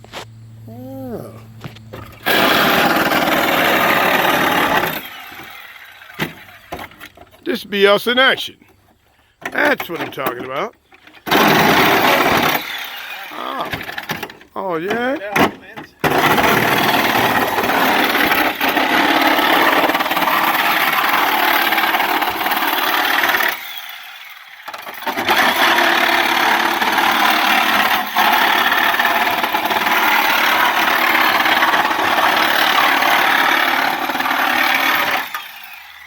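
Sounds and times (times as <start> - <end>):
power tool cutting: 2.0 - 7.0, 11.3 - 14.3, 16.1 - 36.0.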